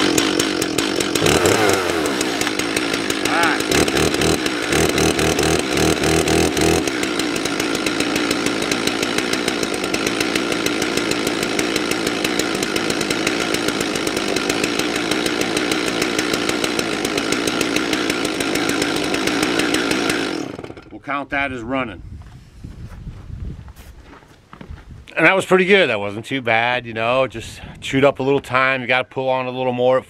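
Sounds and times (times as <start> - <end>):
chainsaw engine running: 0.0 - 21.0.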